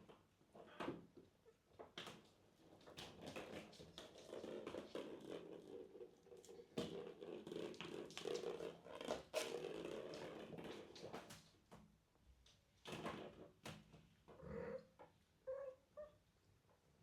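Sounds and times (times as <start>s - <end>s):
kittens scratching and rustling: 2.1s - 11.7s.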